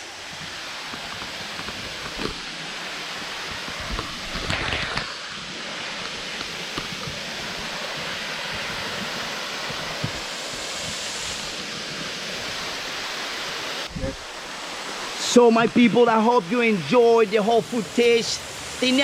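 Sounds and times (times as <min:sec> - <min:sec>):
waterfall rushing: 0:00.0 - 0:19.0.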